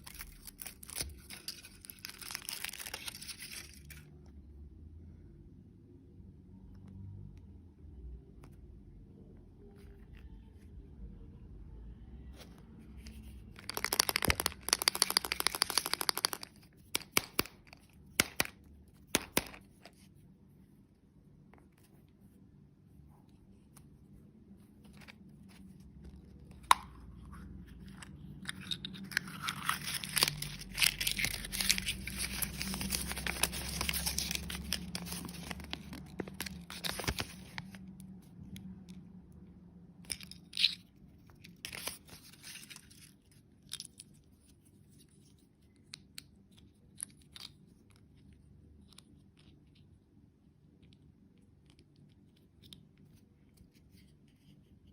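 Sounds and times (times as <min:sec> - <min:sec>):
candy wrapper tearing and crinkling: 0:00.0 - 0:04.2, 0:13.1 - 0:19.8, 0:28.0 - 0:37.9.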